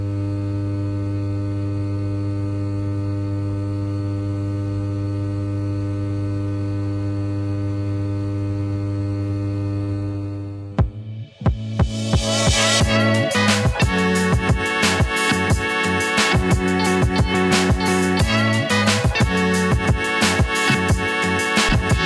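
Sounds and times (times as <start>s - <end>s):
transformer humming: 8.8s - 22.0s.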